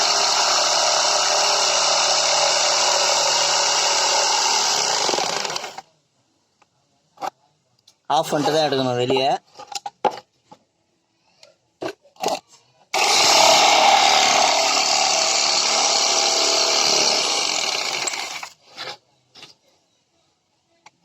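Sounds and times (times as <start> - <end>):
electric jigsaw running: 0.0 - 5.8, 13.0 - 18.5.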